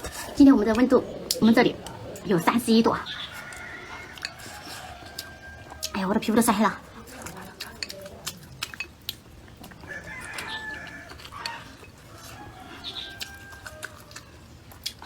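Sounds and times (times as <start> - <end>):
hens clucking: 0.0 - 8.4, 9.5 - 14.8
rooster crowing: 3.0 - 6.1, 9.8 - 14.5.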